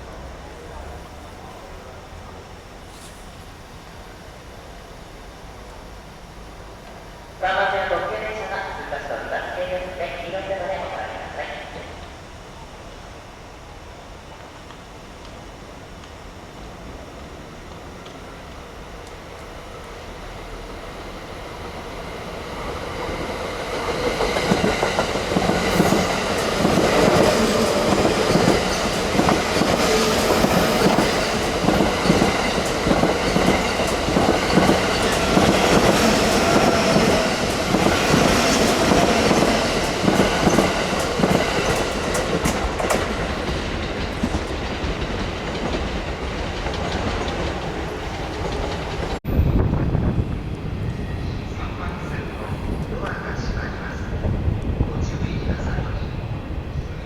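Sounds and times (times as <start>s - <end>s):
train wheels clattering: 22.6s - 49.2s.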